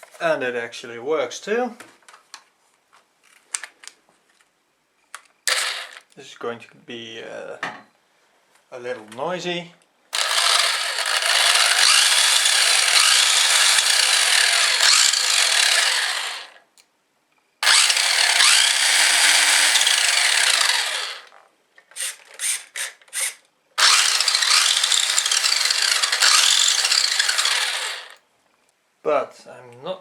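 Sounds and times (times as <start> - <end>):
toy car motor gear whine: 5.5 - 6.0, 10.2 - 16.6, 17.6 - 21.3, 22.0 - 28.2.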